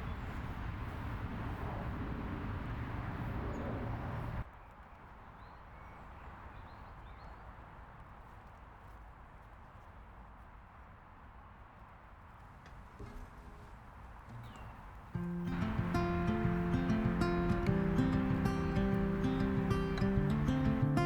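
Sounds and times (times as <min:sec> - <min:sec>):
faint bird chirps: 0:14.3 - 0:21.0
low rumbling noise: 0:15.2 - 0:21.0.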